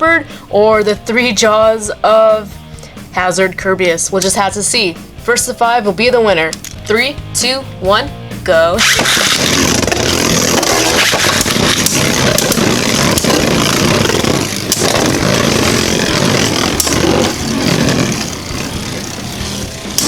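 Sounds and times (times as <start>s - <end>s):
spinning tops whirring and grinding: 8.8s - 20.0s.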